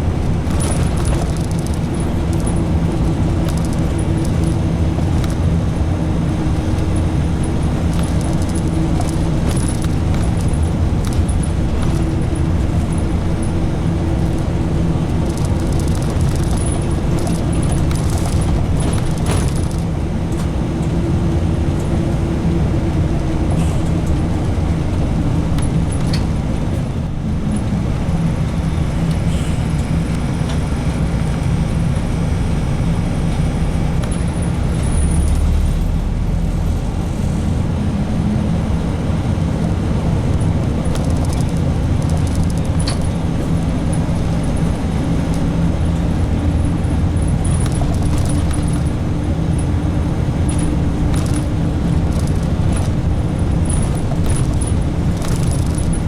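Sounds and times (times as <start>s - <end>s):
bus engine drone: 0.0s - 56.0s
road noise: 0.0s - 56.0s
faint clicks and rattles: 0.3s - 20.9s, 39.6s - 56.0s.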